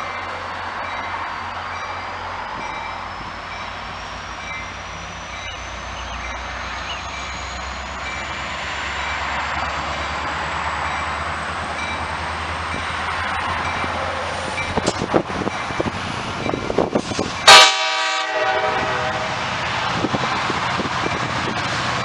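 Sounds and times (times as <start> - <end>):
train rumble and rail noise: 0.0 - 22.0.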